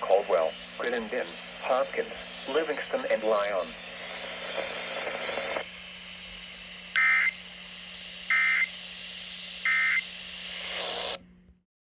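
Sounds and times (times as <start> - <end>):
radio hiss: 0.0 - 5.7
steady low hum: 0.0 - 9.6.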